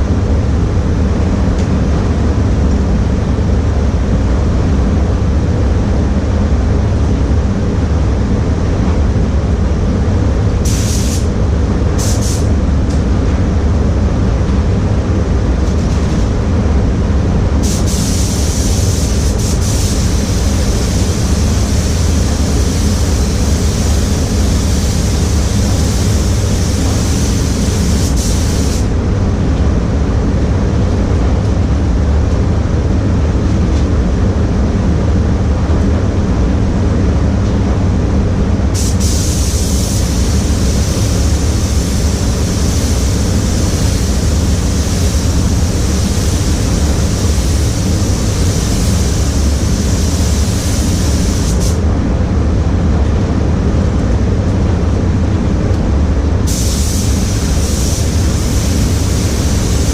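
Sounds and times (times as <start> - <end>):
low rumble of air handling: 0.0 - 59.9
spray gun hissing: 10.6 - 11.3, 12.0 - 12.5, 17.6 - 28.9, 38.8 - 51.8, 56.5 - 59.9.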